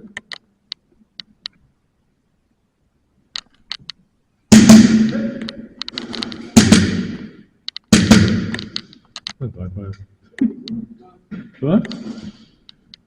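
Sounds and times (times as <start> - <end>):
loud bangs echoing: 4.5 - 5.6, 6.3 - 8.9.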